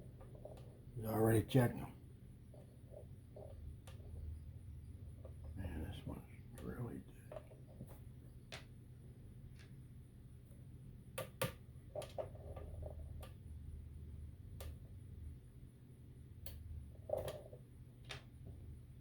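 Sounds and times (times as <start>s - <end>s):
low steady hum: 0.0s - 19.0s
small sharp clicks and taps: 8.4s - 8.8s, 14.5s - 14.8s, 16.4s - 17.4s.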